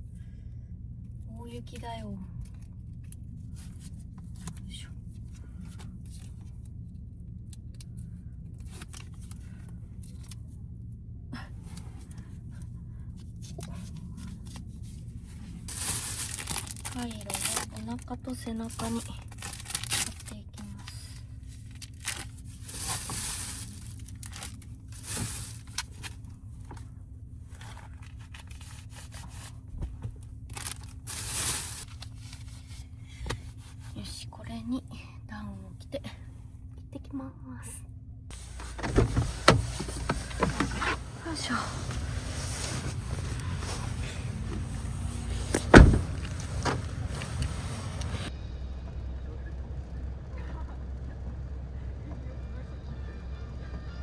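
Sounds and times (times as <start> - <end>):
van door slamming: 38.3 - 48.3
steady low hum: 38.3 - 52.1
steady low rumble: 38.3 - 53.6.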